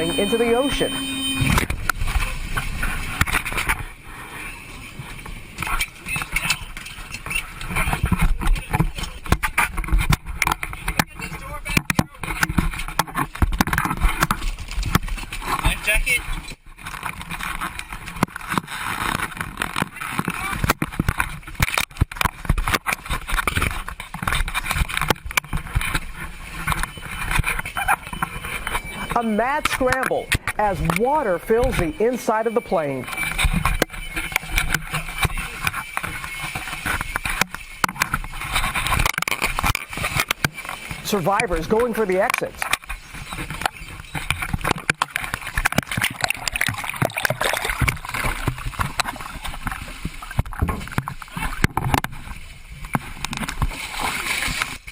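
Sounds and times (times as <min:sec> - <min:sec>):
water splashing and sloshing: 0:00.0 - 0:54.9
rushing water and air: 0:01.4 - 0:08.1, 0:42.6 - 0:54.9
knocks and scrapes: 0:04.7 - 0:54.9.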